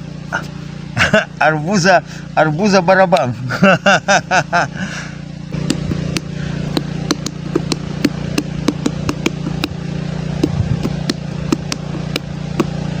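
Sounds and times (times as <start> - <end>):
steady low hum: 0.0 - 13.0
hands drumming on watermelon: 5.6 - 9.8, 10.4 - 12.8.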